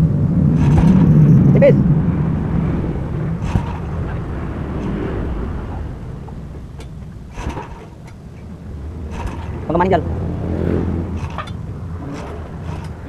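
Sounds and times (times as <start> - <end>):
motorcycle engine low rumble: 0.0 - 13.0.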